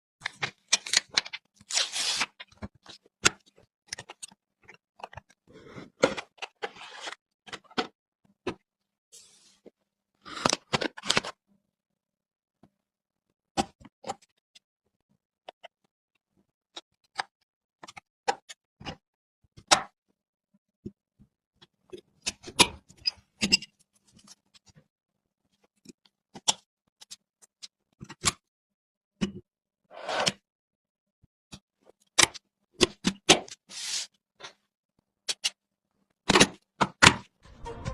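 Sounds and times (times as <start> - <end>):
packaging tearing and rustling: 0.8 - 2.4.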